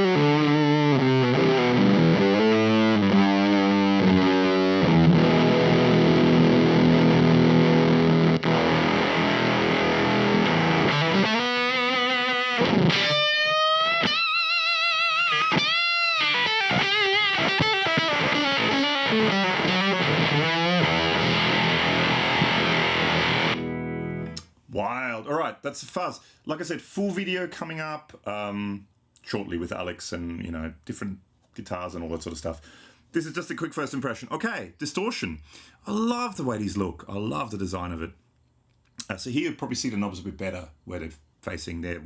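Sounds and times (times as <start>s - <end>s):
fuzzed electric guitar: 0.0s - 24.4s.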